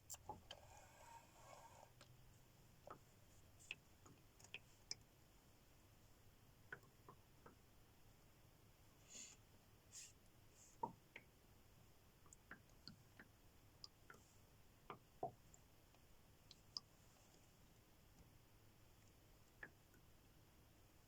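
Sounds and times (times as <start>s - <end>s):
faint irregular clicks: 0.0s - 5.2s, 6.6s - 7.6s, 10.0s - 11.4s, 12.2s - 20.3s.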